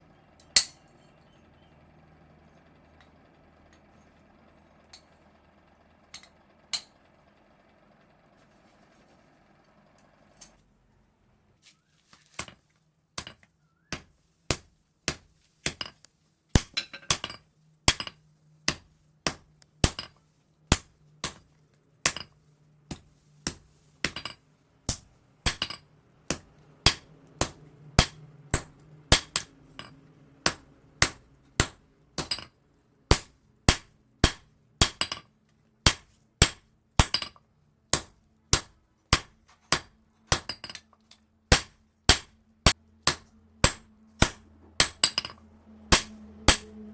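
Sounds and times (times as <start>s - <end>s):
hammer striking steel on anvil: 0.4s - 1.2s, 16.6s - 21.4s, 22.0s - 40.9s, 41.5s - 42.4s, 43.0s - 46.8s.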